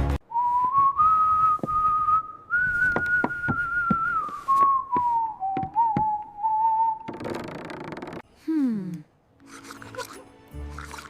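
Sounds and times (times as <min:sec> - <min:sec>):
person whistling a slow tune: 0:00.3 - 0:07.0.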